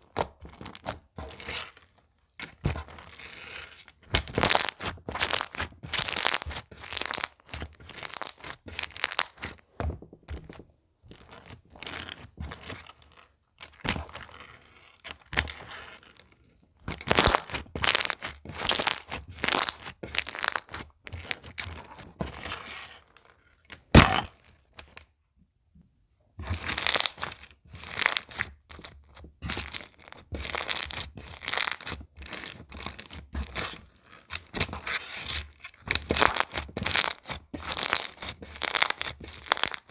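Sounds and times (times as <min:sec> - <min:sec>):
slime squishing and popping: 0:04.3 - 0:09.5, 0:17.0 - 0:20.8, 0:26.6 - 0:28.4, 0:29.4 - 0:31.9, 0:36.0 - 0:39.9.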